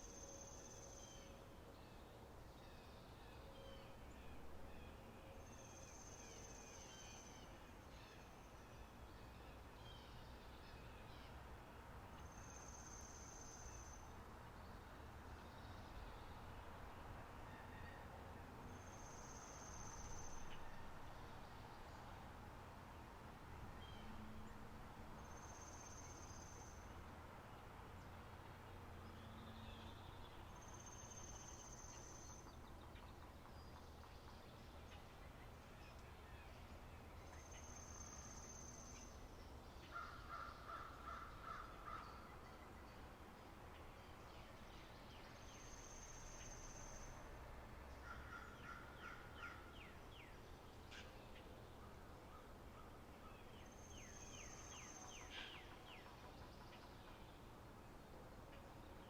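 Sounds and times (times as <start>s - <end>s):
high thin whistled birdsong: 18.8s - 22.1s, 25.2s - 27.0s, 29.4s - 39.9s, 44.0s - 47.3s, 52.8s - 57.4s.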